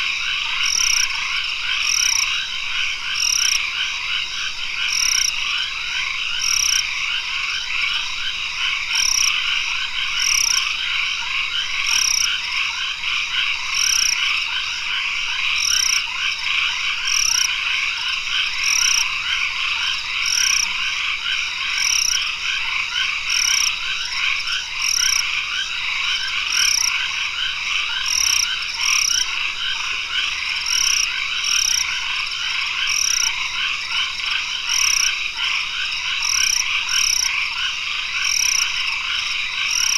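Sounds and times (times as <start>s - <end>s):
chorus of frogs calling: 0.0s - 39.9s.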